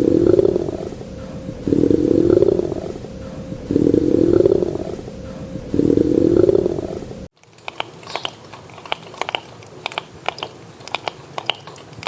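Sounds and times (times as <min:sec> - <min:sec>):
low rumbling animal sound: 0:00.0 - 0:07.3.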